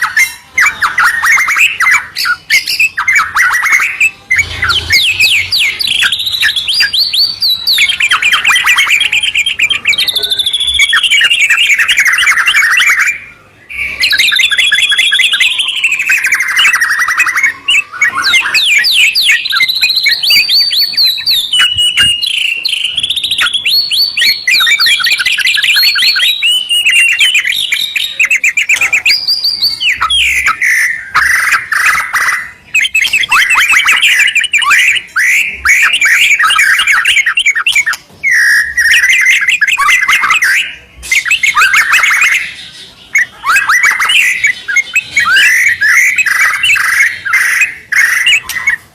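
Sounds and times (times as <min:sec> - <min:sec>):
birds singing trills and whistles: 0:00.0 - 0:48.9.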